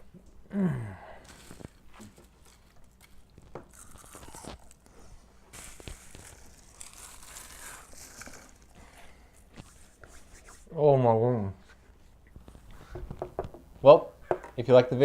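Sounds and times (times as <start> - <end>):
kale chips crunching: 1.2 - 4.9, 5.5 - 8.8.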